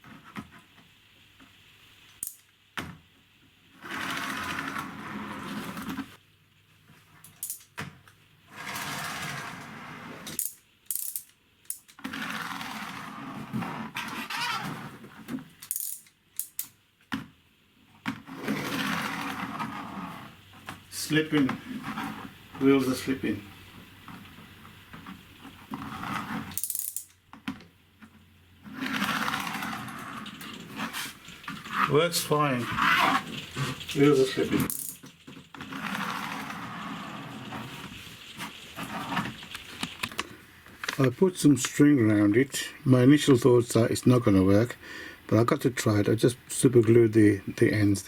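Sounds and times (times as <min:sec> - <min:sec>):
wind-up toy car gears whirring: 0:10.2 - 0:13.0, 0:15.6 - 0:16.7, 0:25.8 - 0:27.2, 0:28.7 - 0:40.1.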